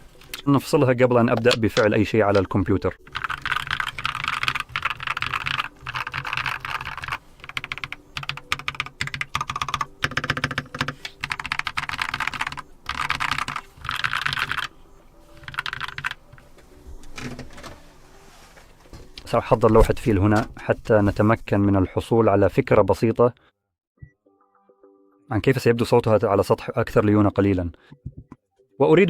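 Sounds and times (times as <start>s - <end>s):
typing on mechanical keyboard: 2.4s - 14.7s, 15.4s - 16.4s.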